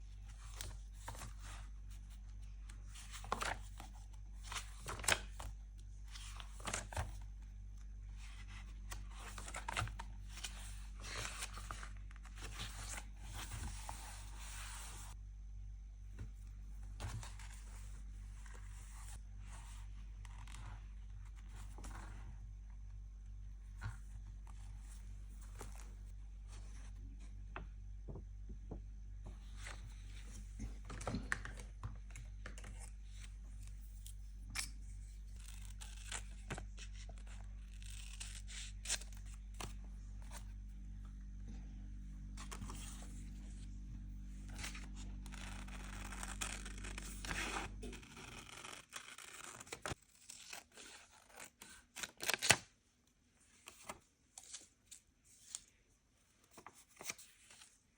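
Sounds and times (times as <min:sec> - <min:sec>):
steady low hum: 0:00.0 - 0:48.7
paper tearing and rustling: 0:44.5 - 0:52.6.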